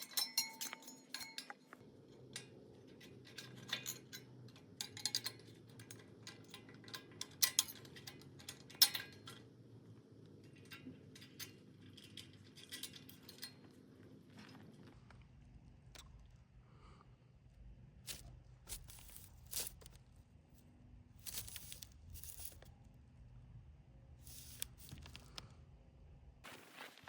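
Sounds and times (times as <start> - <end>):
metal tools clinking: 0.0 - 9.4, 10.5 - 13.7, 18.1 - 20.0, 21.2 - 22.7, 24.3 - 25.4
faint steady hum: 0.0 - 26.6.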